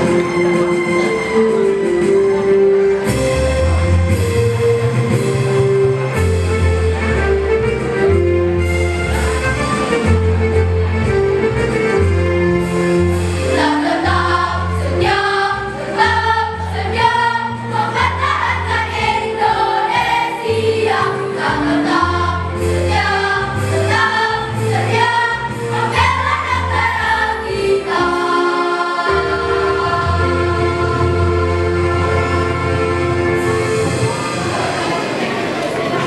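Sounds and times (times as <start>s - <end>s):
instrumental accompaniment: 0.0s - 36.0s
choir singing in parts: 13.4s - 35.2s.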